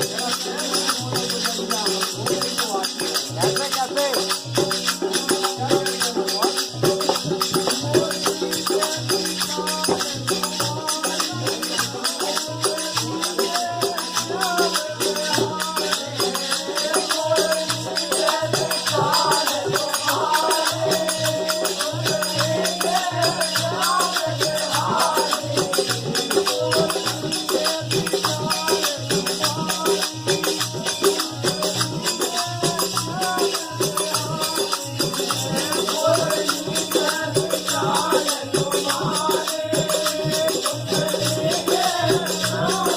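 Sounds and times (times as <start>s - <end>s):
drum beat: 0.0s - 42.9s
jingling rattling percussion: 0.0s - 42.9s
person singing: 0.0s - 42.9s.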